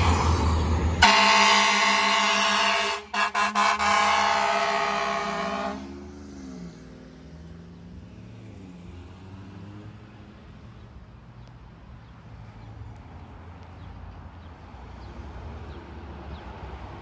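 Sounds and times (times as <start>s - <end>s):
vehicle engine and road noise: 0.0s - 17.0s
ambulance air horn: 1.0s - 6.0s.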